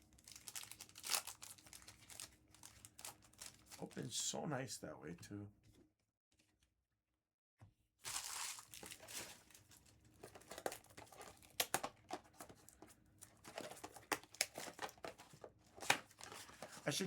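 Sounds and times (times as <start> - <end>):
foil wrapper tearing: 0.0 - 4.0, 8.0 - 12.5, 13.3 - 15.1
wrapper crinkling: 0.0 - 4.0, 8.0 - 17.0
cards being handled: 10.2 - 17.0.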